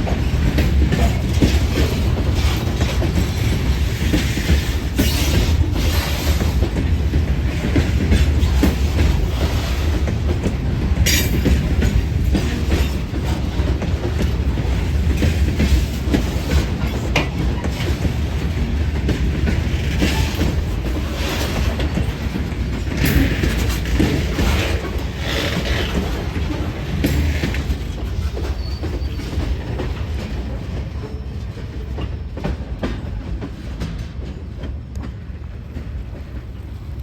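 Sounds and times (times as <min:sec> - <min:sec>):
wheels clacking over rail joints: 0:00.0 - 0:36.6
train rumbling past: 0:00.0 - 0:37.0
high wheel squeal: 0:28.1 - 0:29.6.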